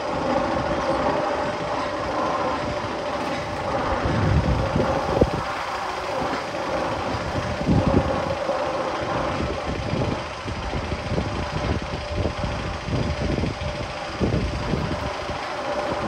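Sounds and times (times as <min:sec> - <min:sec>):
constant hum: 0:00.0 - 0:16.0
roller coaster mechanical rumble: 0:00.0 - 0:16.0.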